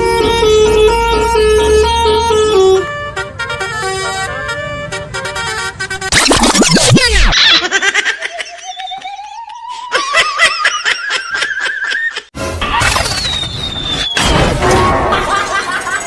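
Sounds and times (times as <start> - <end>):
falling glide sound effect: 6.1 - 7.3
falling whistle: 12.8 - 14.4.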